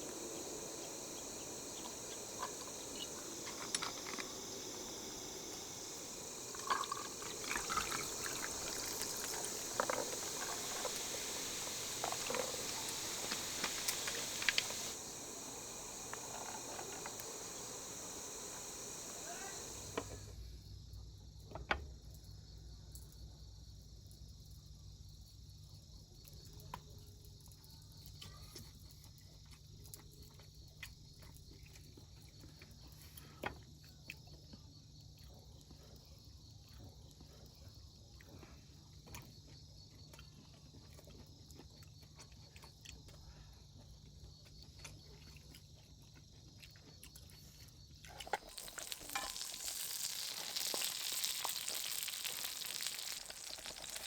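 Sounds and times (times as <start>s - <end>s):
food sizzling in a pan: 0.0s - 20.3s, 48.3s - 54.0s
crickets trilling: 0.0s - 22.5s, 42.7s - 54.0s.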